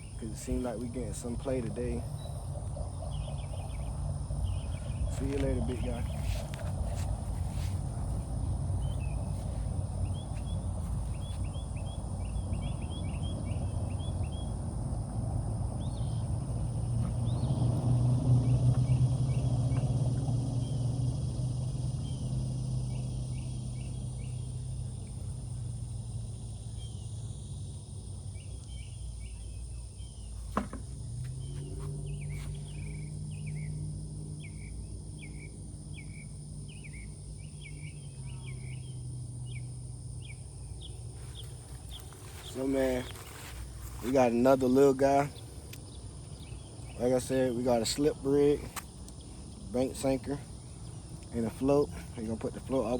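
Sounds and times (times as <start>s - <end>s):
birds chirping in trills: 0.0s - 52.9s
low hum: 0.0s - 52.9s
high insect buzz: 21.5s - 52.9s.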